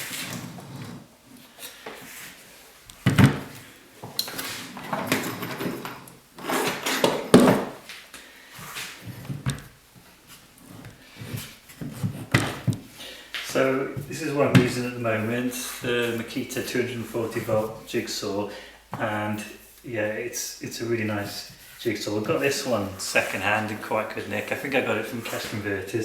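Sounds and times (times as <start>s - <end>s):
hard objects knocking and clunking: 3.0s - 7.8s, 10.6s - 13.0s.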